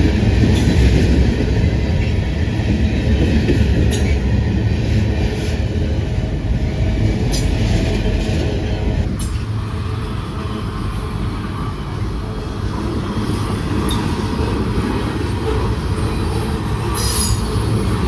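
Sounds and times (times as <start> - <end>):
train wheels rumbling on rail: 0.0 - 18.0
wheel squeal: 16.9 - 17.8.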